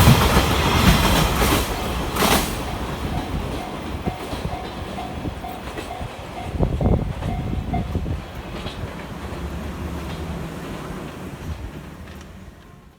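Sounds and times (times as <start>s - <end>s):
freight train wagons rumbling: 0.0s - 12.9s
wheels clacking over rail joints: 0.0s - 12.9s
level crossing warning bell: 1.1s - 8.8s.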